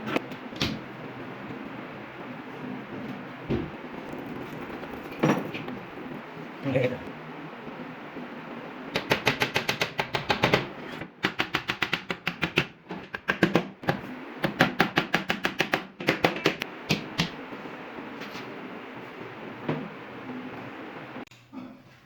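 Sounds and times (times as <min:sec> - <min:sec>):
rapid sharp taps: 0:08.9 - 0:17.4.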